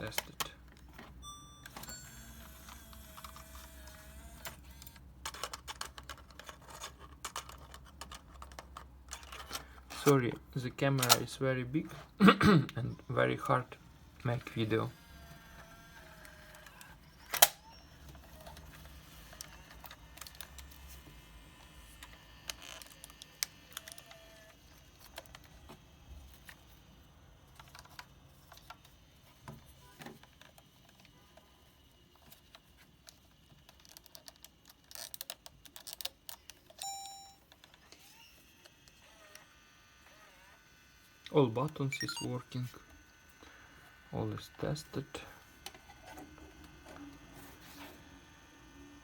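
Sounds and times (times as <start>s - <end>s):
short electronic beep: 41.9s - 42.3s.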